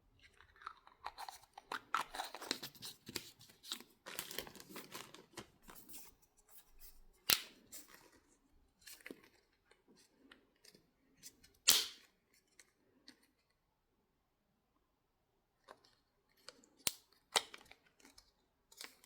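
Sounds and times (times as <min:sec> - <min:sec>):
packaging rustling: 0:00.5 - 0:07.0
plastic bottle snapping: 0:07.3 - 0:07.5, 0:11.7 - 0:12.0.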